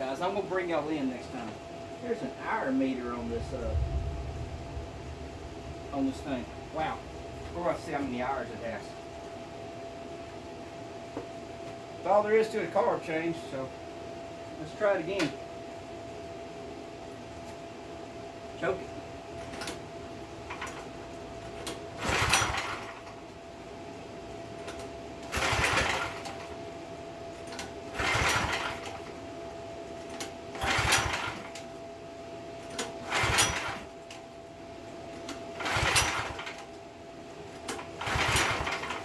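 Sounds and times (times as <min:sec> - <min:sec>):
recoil starter pulls on small engine: 0:21.7 - 0:23.1, 0:25.3 - 0:26.5, 0:27.6 - 0:29.1, 0:30.5 - 0:31.6, 0:32.8 - 0:33.9, 0:35.6 - 0:36.7, 0:37.7 - 0:39.0.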